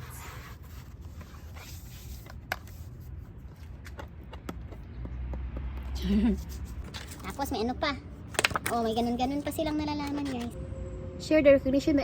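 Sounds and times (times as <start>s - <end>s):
plaque and packaging clicking: 8.3s - 8.9s
low steady hum: 8.9s - 12.0s.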